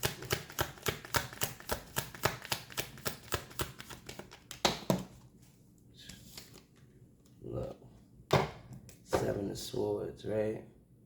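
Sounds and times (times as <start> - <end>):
cards being shuffled: 0.3 - 4.8.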